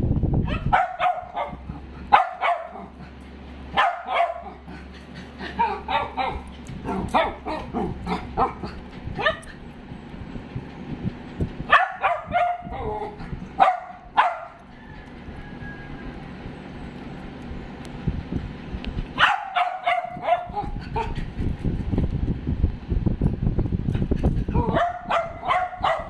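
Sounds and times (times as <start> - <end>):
dog barking: 0.5 - 3.0, 3.7 - 4.7, 5.6 - 9.4, 11.7 - 14.6, 19.2 - 21.2, 24.6 - 26.0.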